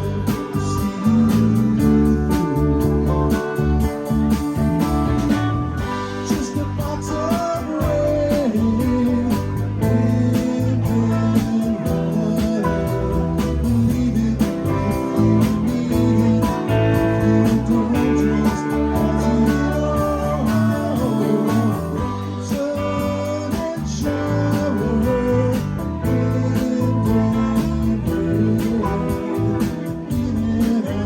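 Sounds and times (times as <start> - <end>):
bass guitar: 0.0 - 31.0
electric guitars: 0.0 - 31.0
steady drum beat: 0.0 - 31.0.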